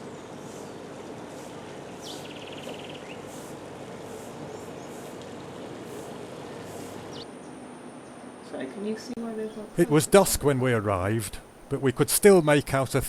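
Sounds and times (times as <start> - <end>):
steady background hum: 0.0 - 13.0
insects calling in high pulses: 5.8 - 8.4.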